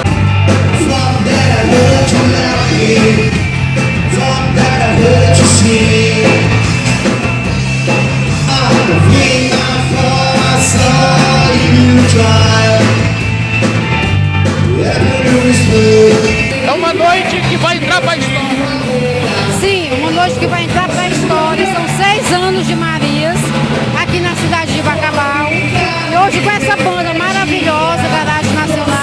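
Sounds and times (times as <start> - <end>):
bass line: 0.0 - 29.0
drums: 0.0 - 29.0
live rock band playing: 0.0 - 29.0
person singing: 0.6 - 6.8, 8.3 - 13.3, 14.6 - 17.5.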